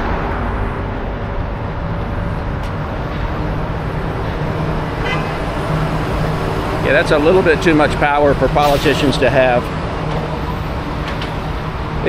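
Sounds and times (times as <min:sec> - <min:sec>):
low hum: 0:00.0 - 0:08.6
road traffic noise: 0:00.0 - 0:12.0.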